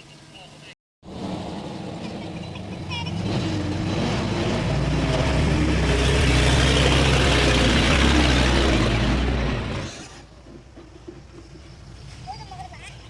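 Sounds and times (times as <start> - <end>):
heavy diesel engine droning: 1.0 - 10.3.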